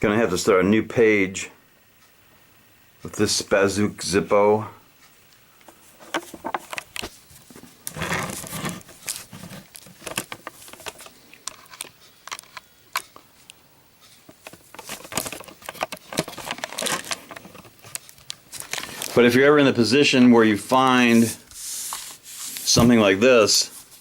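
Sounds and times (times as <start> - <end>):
plastic crinkling and rustling: 5.7 - 13.1, 14.2 - 19.4.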